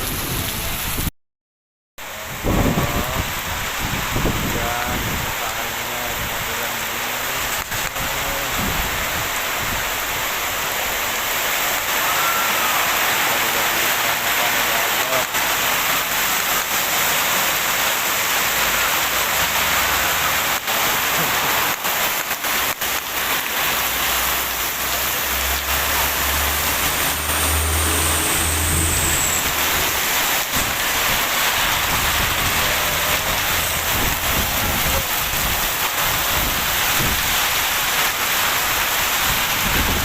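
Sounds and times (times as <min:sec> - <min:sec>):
heavy rain pouring: 0:00.0 - 0:01.1, 0:02.0 - 0:40.0
low rumble: 0:25.5 - 0:35.6.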